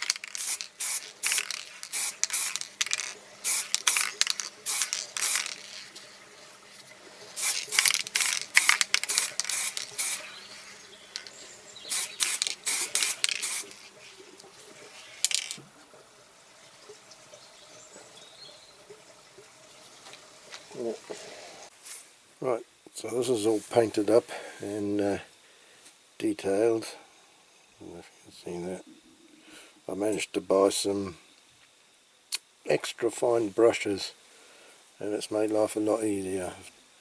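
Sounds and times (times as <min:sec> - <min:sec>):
aerosol spray can hissing: 0:00.0 - 0:06.1, 0:07.4 - 0:14.0.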